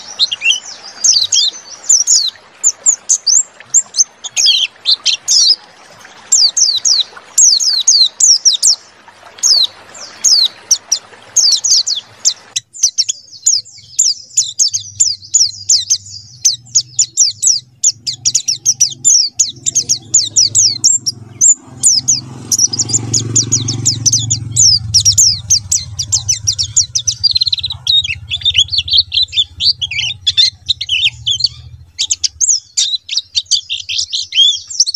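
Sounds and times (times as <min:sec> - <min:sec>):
bird singing high chirps and trills: 0:00.0 - 0:34.9
low hum: 0:17.7 - 0:32.8.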